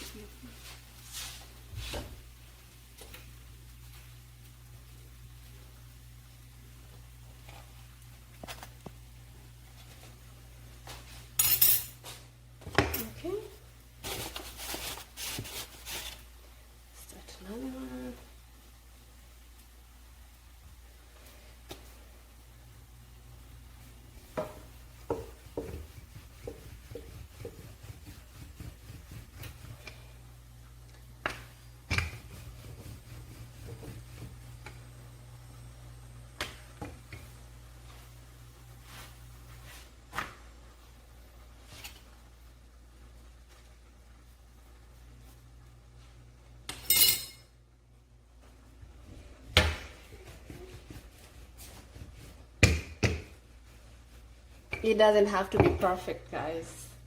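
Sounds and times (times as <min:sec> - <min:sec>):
rolling pin knocking on board: 0:24.3 - 0:28.8, 0:52.6 - 0:53.4
metallic clink of kitchenware: 0:46.7 - 0:47.5.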